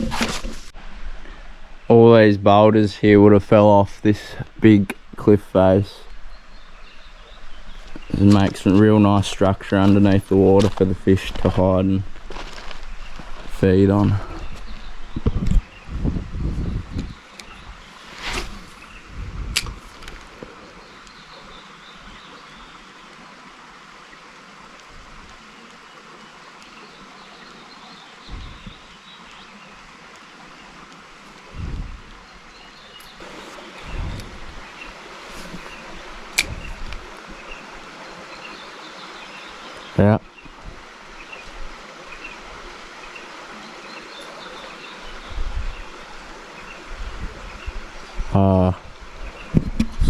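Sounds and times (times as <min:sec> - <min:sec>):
creek water rushing over rocks: 0:00.0 - 0:50.0
low rumbling: 0:13.0 - 0:19.8, 0:31.4 - 0:32.3.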